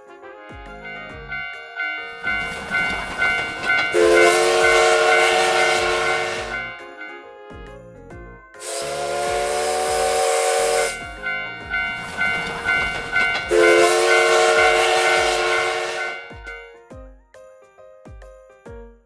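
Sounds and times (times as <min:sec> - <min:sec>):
steam locomotive whistle: 0:00.0 - 0:07.9, 0:08.6 - 0:16.6
steam hissing: 0:08.6 - 0:16.0.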